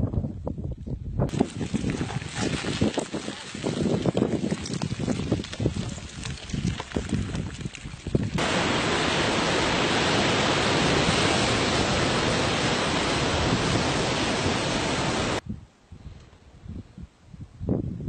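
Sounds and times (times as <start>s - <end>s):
loud steady rushing noise: 8.4s - 15.4s.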